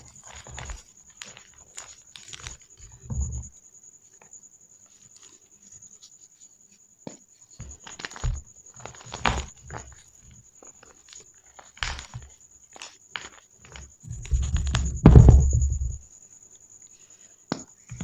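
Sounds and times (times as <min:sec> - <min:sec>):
chalk balls crunching: 0:07.6 - 0:15.0.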